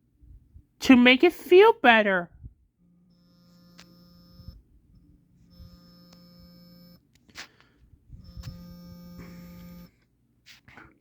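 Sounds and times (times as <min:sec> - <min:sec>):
phone vibration motor buzzing: 0:02.7 - 0:10.1.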